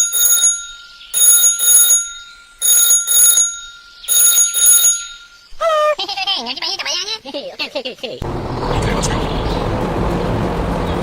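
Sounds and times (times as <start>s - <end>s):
bell-like double ringing: 0.0s - 5.6s.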